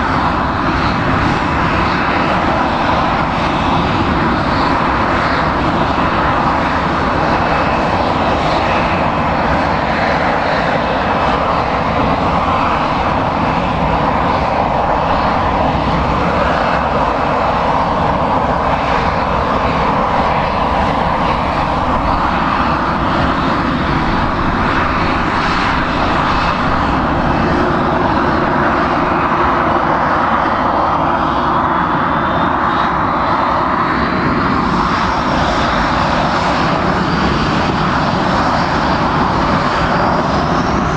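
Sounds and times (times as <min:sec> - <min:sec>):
rising engine whine: 0:00.0 - 0:32.4
jet engines running: 0:00.0 - 0:40.9.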